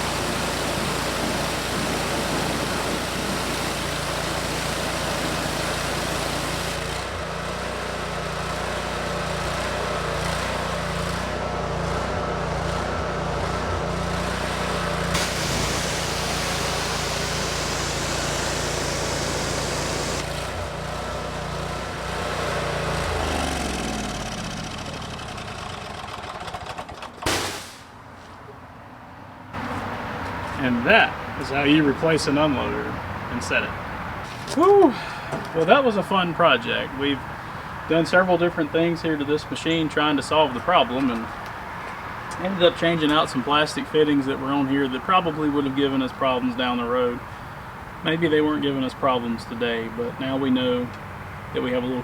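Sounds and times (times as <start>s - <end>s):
hiss of spray: 0.0s - 6.5s, 15.2s - 20.3s
pressure washer engine running: 0.0s - 26.2s, 29.6s - 52.0s
engine spinning down: 13.4s - 27.0s.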